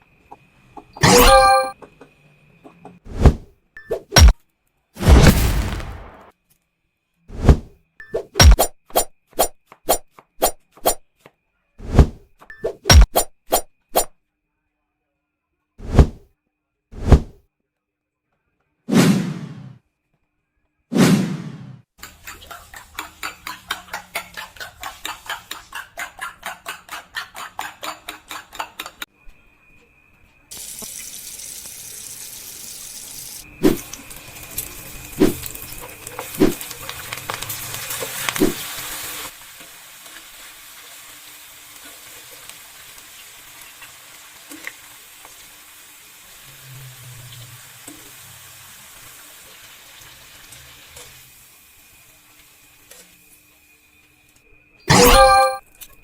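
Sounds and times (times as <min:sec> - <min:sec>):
knife cutting strokes: 0:03.1 - 0:03.5, 0:07.3 - 0:11.0, 0:11.8 - 0:14.1, 0:15.8 - 0:16.2, 0:17.0 - 0:17.4
frying sizzle: 0:30.5 - 0:54.3.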